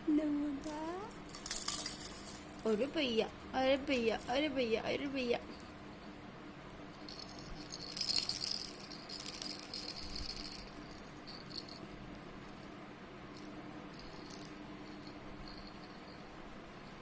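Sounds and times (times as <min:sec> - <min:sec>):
toy rattle jingling: 0:00.6 - 0:03.1, 0:07.0 - 0:11.9, 0:13.4 - 0:17.0.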